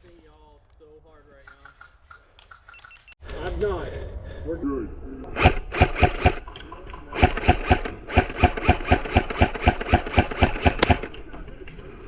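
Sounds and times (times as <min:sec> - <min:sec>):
airsoft gun firing single shots: 0:07.2 - 0:11.1.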